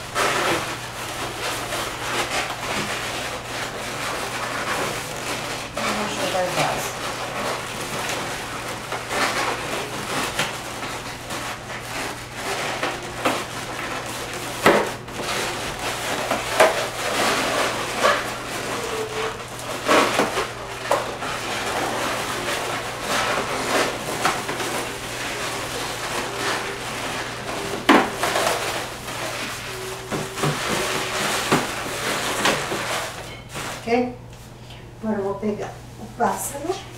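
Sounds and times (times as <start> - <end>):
balloons rubbing and squeaking: 0.0 - 33.2.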